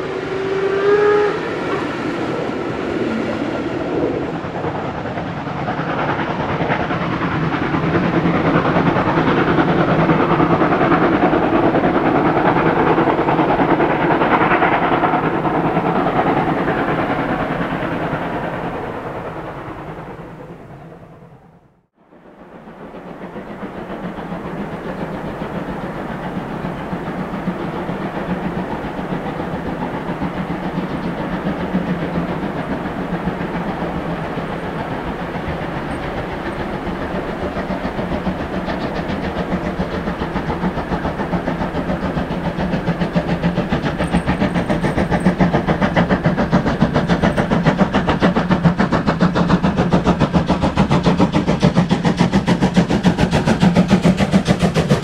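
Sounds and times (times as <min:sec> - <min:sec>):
steam locomotive exhaust beats: 0:00.0 - 0:55.0.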